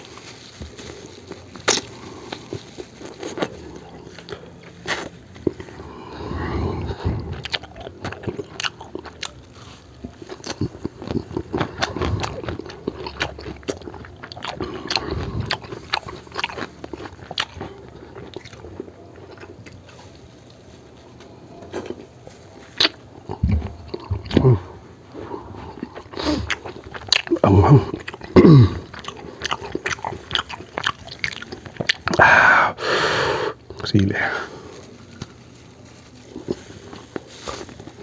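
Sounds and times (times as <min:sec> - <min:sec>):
person chewing food: 0:00.0 - 0:32.8, 0:34.7 - 0:38.0.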